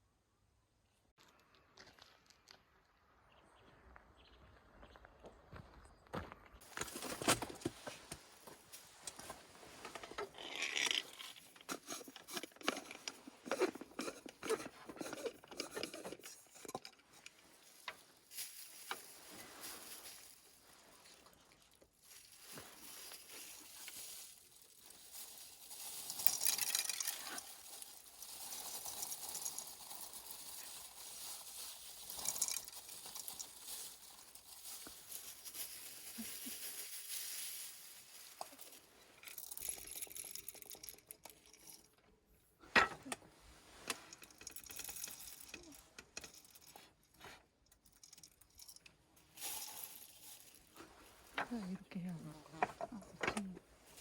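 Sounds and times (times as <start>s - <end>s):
handling rustling: 6.6s - 42.0s.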